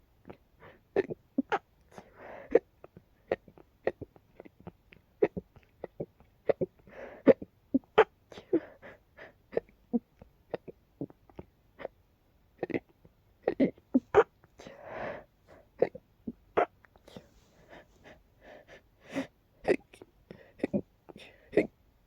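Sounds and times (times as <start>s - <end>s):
person hiccuping: 1.0s - 1.6s, 13.5s - 14.5s, 15.8s - 16.9s
breathy gasps: 14.6s - 15.7s.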